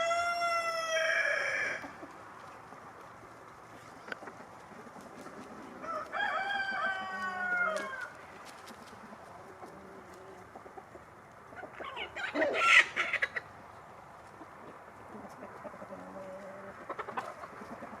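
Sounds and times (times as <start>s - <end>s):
loud chicken call: 0.0s - 2.0s, 5.7s - 8.2s, 11.7s - 13.5s
hens clucking: 0.0s - 18.0s.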